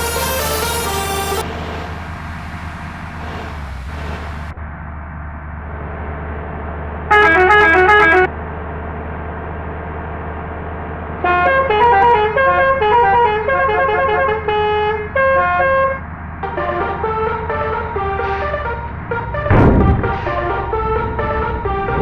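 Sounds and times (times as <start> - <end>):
musical bus horn playing melodies: 0.0 - 2.0, 7.1 - 8.3, 11.2 - 22.0
low engine hum: 0.0 - 22.0.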